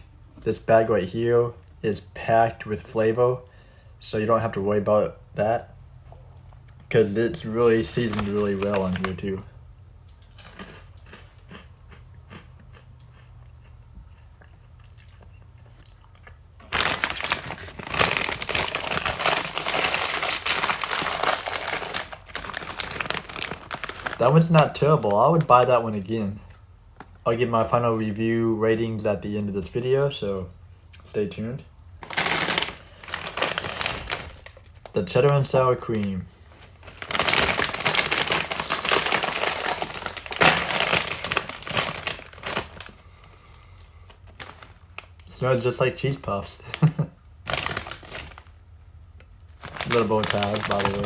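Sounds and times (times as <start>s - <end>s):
chip bag crinkling: 7.8s - 9.4s, 10.2s - 11.7s, 16.2s - 25.6s, 32.0s - 45.7s, 46.3s - 48.6s, 49.4s - 51.0s.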